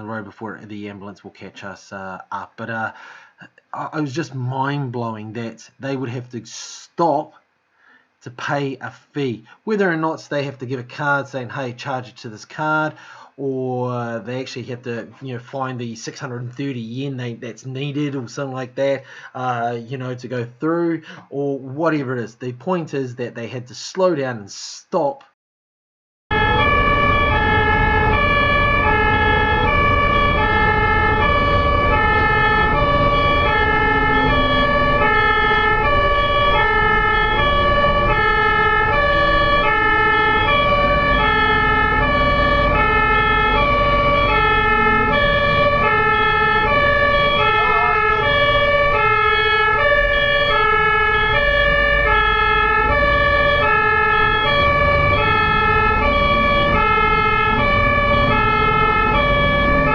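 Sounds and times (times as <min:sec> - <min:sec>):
road and engine rumble: 0:26.3 - 0:59.9
two-tone ambulance siren: 0:26.3 - 0:59.9.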